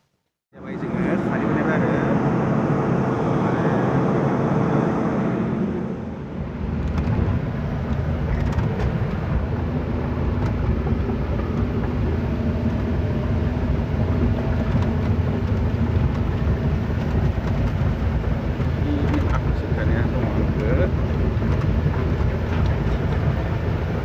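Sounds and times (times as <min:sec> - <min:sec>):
engine droning: 0:00.6 - 0:24.0.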